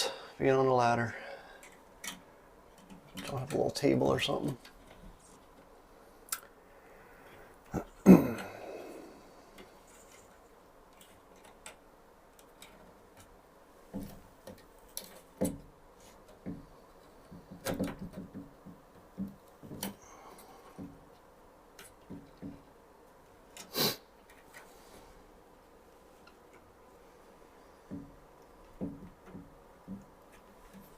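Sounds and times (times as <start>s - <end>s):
cable wires clicking and tapping: 1.5s - 5.7s, 9.5s - 24.7s, 27.8s - 30.9s.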